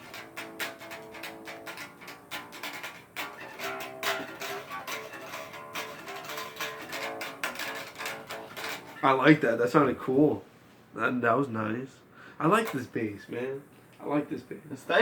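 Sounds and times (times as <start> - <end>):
bass guitar plucked notes: 0.0 - 9.3.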